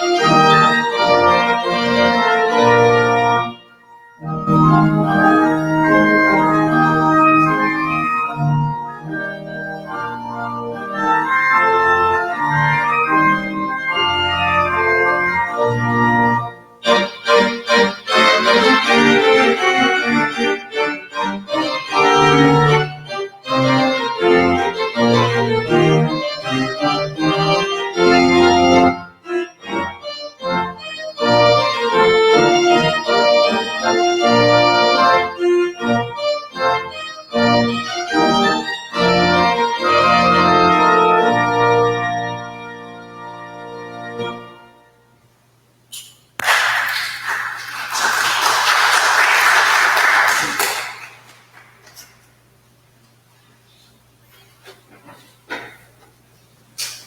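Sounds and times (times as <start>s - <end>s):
church organ chords: 0.0s - 45.6s.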